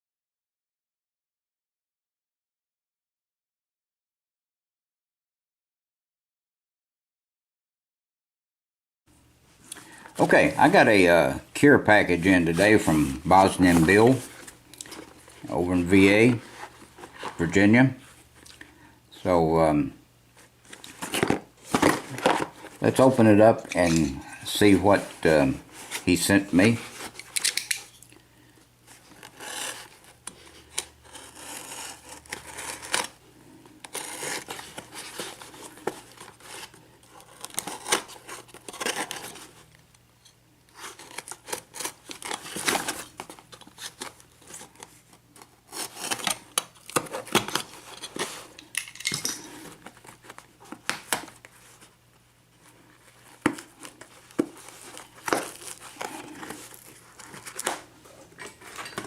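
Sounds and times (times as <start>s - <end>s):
cardboard box rustling: 20.7s - 27.2s, 33.9s - 39.6s, 53.0s - 59.0s.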